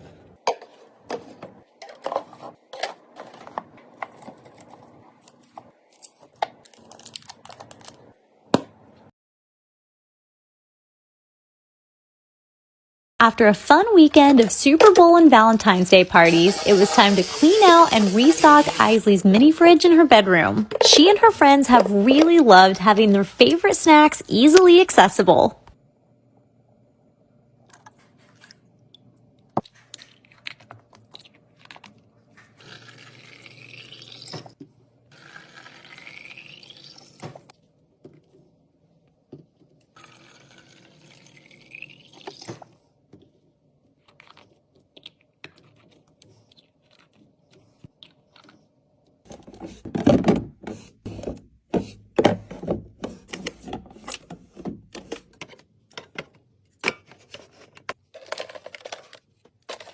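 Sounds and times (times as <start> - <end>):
items knocking and clattering: 49.3 - 59.9.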